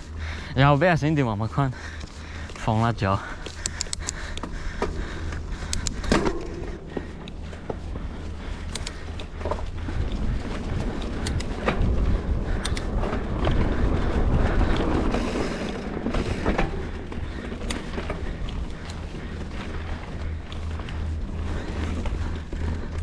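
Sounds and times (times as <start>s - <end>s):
low road rumble: 0.0s - 23.0s
wind buffeting microphone: 0.0s - 23.0s
clicks and rattles: 3.4s - 7.8s.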